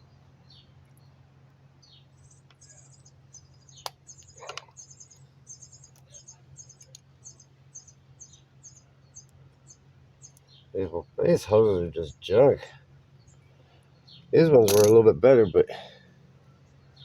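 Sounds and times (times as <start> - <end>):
bird chirping: 0.0 - 1.2, 1.8 - 12.5, 13.1 - 17.0
low steady hum: 0.0 - 17.0
sharp click: 14.7 - 15.0.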